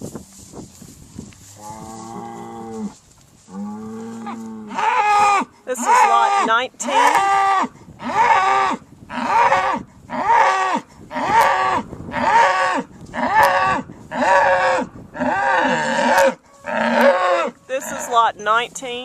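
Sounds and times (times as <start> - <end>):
cattle bawling: 4.1 - 18.3.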